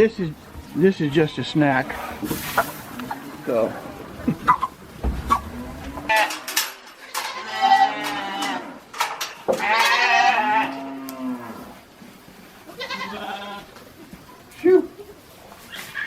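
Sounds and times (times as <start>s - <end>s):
cows mooing: 1.0s - 8.9s, 9.5s - 11.8s.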